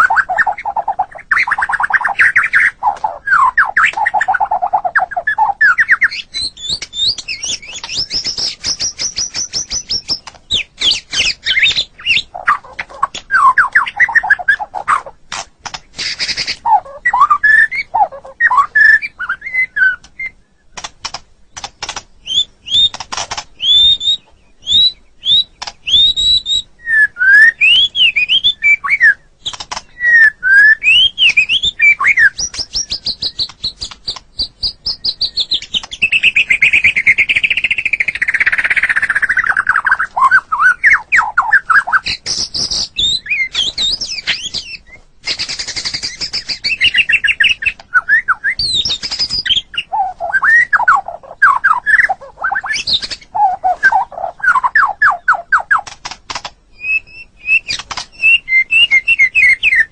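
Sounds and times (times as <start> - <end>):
songbird singing whistles and trills: 0.0 - 15.2, 15.9 - 59.9.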